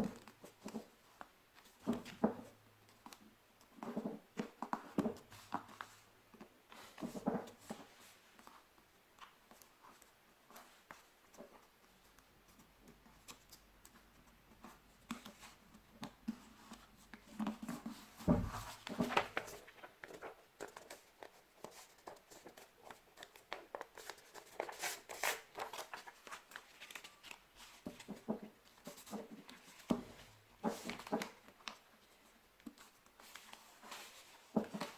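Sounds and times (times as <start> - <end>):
paper being folded and creased: 0.2 - 8.6, 9.2 - 34.9.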